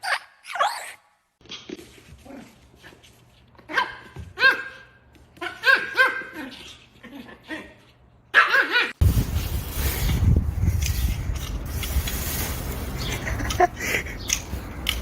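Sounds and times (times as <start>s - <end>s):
dog barking: 5.4s - 6.4s.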